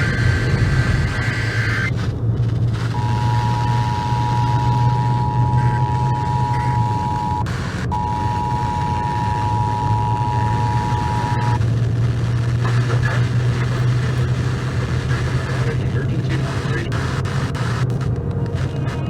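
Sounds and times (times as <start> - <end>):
vehicle engine drone: 0.0 - 19.0
two-tone attention signal: 2.9 - 11.6.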